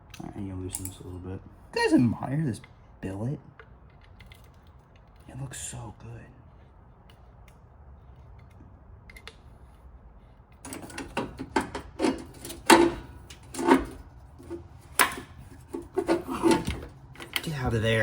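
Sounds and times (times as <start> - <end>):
hand tools clicking on metal parts: 0.1 - 1.1, 10.6 - 17.8.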